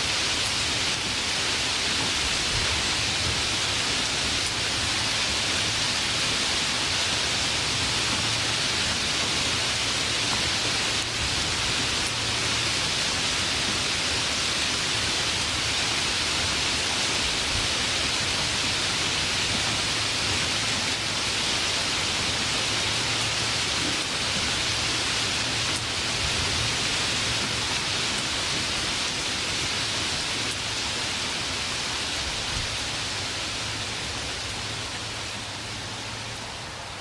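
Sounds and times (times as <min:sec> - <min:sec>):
steady rain falling: 0:00.0 - 0:37.0.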